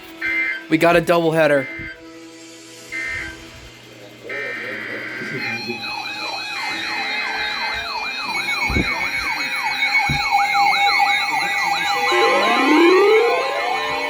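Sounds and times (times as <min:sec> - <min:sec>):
steady alarm tone: 0:00.2 - 0:02.1, 0:02.9 - 0:03.4, 0:04.2 - 0:14.0
electronic siren yelping: 0:04.4 - 0:14.0
rising siren wails: 0:05.5 - 0:14.0.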